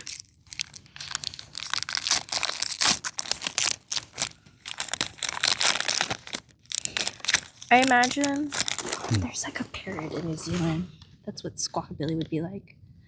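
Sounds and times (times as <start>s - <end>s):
foil wrapper crinkling and tearing: 0.0s - 9.4s.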